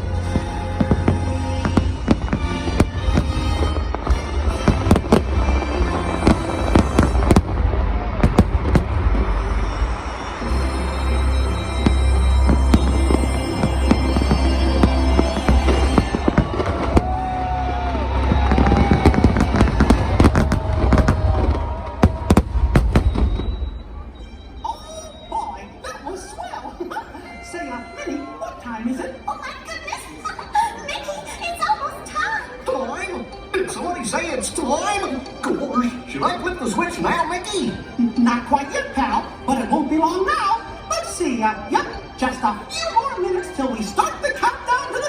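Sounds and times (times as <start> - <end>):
loud music: 0.0 - 23.2
deep low rumble: 0.0 - 24.6
fireworks banging: 0.0 - 25.3.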